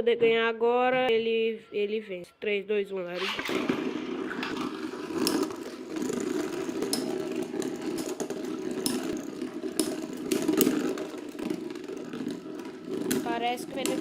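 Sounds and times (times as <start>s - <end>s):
spinning tops clacking together: 3.2s - 14.0s
spinning tops whirring and grinding: 3.2s - 14.0s.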